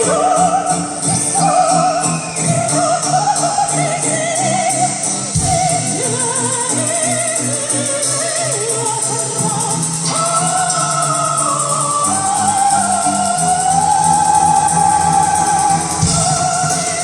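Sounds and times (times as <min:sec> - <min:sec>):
soprano singing with vibrato: 0:00.0 - 0:17.0
low sustained accompaniment: 0:10.5 - 0:17.0.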